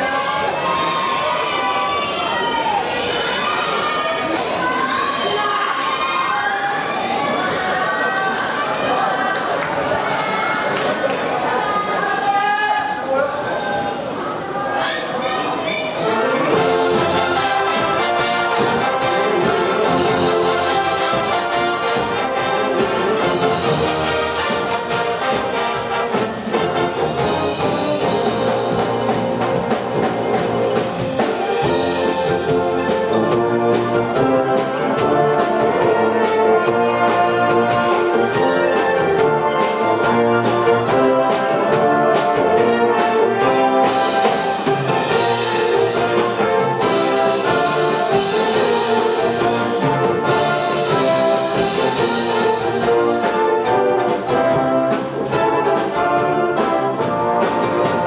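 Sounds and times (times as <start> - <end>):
trumpets and trombones: 16.0 - 58.0
drums beating: 16.5 - 58.0.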